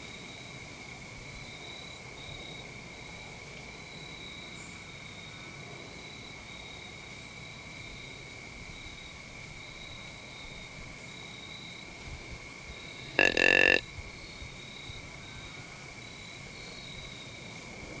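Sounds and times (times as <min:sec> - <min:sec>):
continuous high insect trill: 0:00.0 - 0:18.0
higher broken insect trill: 0:13.2 - 0:13.8.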